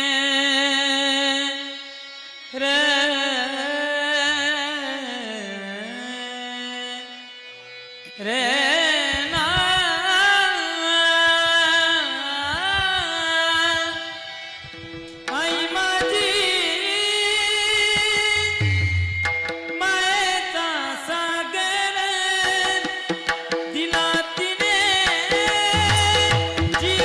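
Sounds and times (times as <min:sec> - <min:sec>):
sustained accompaniment: 0:22.4 - 0:27.0
hand drum: 0:23.2 - 0:27.0.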